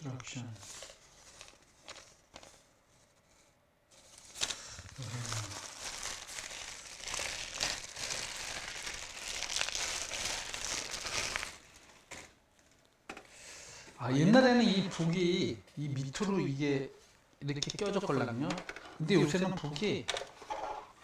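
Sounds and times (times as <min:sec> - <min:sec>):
packaging crinkling: 0:00.6 - 0:02.7, 0:04.0 - 0:13.0.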